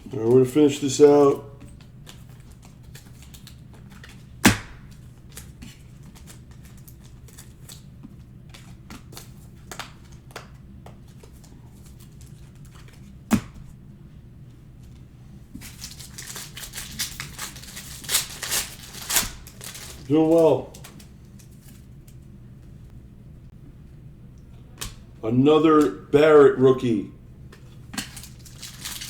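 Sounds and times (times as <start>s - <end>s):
foil wrapper crinkling: 1.6s - 7.9s, 11.0s - 13.2s, 15.6s - 22.2s, 28.0s - 29.0s
cards clicking and tapping: 1.6s - 13.7s.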